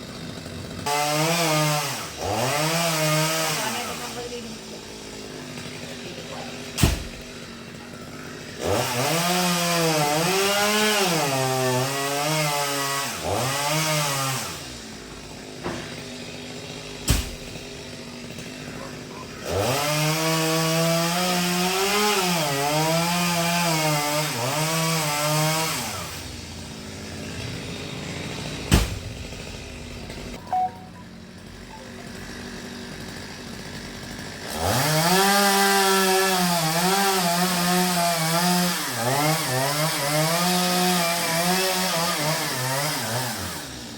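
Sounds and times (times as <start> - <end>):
chainsaw cutting wood: 0.0 - 43.9
sharp knocks: 6.8 - 7.3, 17.0 - 17.7, 28.7 - 29.2.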